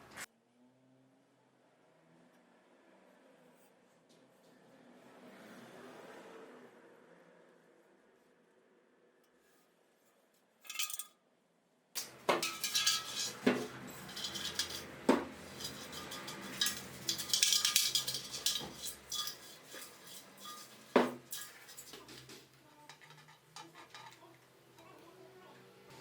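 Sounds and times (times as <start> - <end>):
metal clatter: 10.6 - 11.1, 12.0 - 24.3
metal tools clinking and scraping: 10.6 - 11.1, 12.0 - 24.9.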